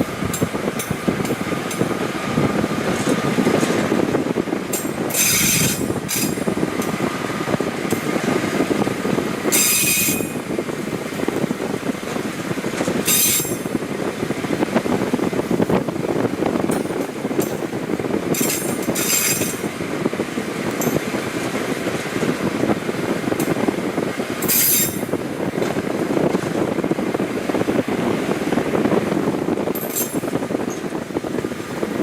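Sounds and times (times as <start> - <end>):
rail car engine and wheel rumble: 0.0 - 32.0
high hissing squeals: 9.5 - 10.4.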